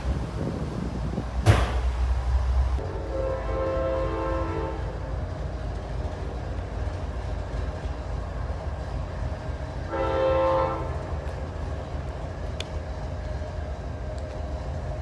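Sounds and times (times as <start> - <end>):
train rumbling past: 0.0 - 15.0
locomotive air horn blast: 2.8 - 5.0, 9.9 - 11.0.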